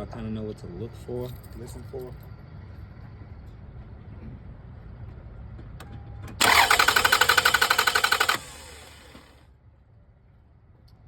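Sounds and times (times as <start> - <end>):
car engine cranking: 6.4 - 9.4.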